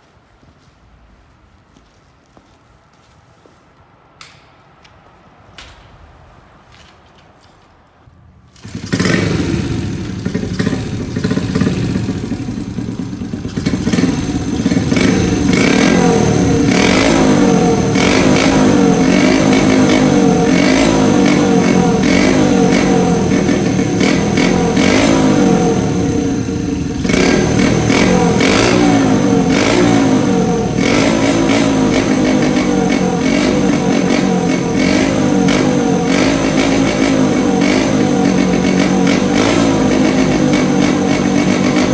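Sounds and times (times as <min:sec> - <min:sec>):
small motorcycle engine revving: 0:08.5 - 0:41.9.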